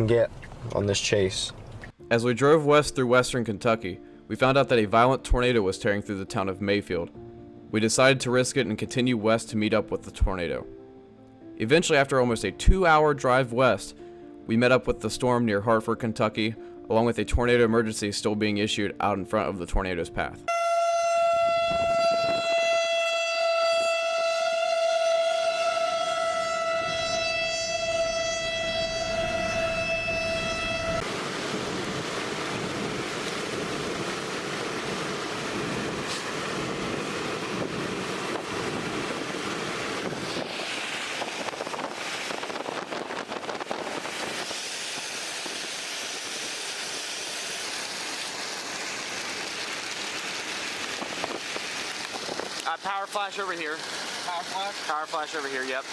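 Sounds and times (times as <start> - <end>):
steady warning tone: 20.5 - 31.0
wind and rain: 30.2 - 55.9.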